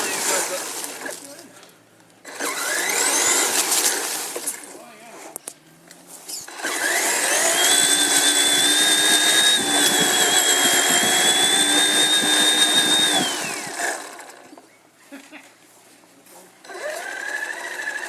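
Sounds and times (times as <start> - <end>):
rc truck motor whining: 0.0 - 1.3, 2.2 - 5.5, 6.3 - 14.6, 16.6 - 18.0.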